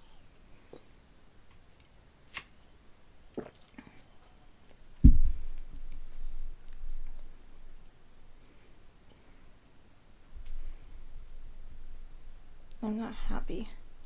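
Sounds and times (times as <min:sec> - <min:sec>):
mouth clicks and gulps: 0:03.3 - 0:04.0.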